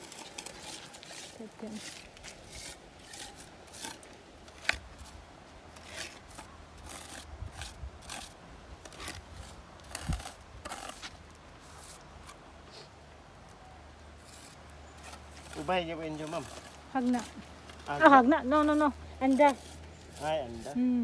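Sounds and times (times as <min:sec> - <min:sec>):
short scraping strokes: 0:00.0 - 0:05.2, 0:14.2 - 0:20.8.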